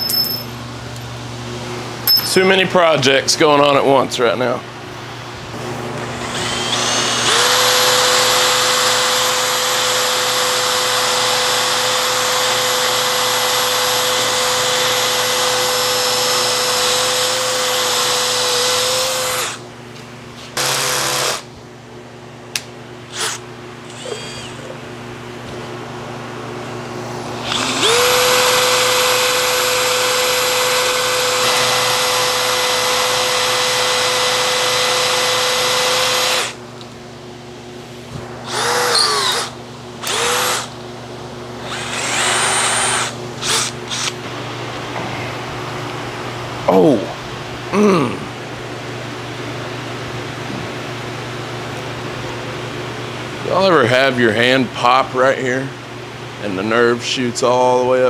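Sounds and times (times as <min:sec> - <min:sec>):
power drill whining: 0:06.1 - 0:19.6, 0:20.6 - 0:21.4, 0:23.1 - 0:24.8, 0:27.4 - 0:36.6, 0:38.4 - 0:40.7, 0:41.6 - 0:44.2.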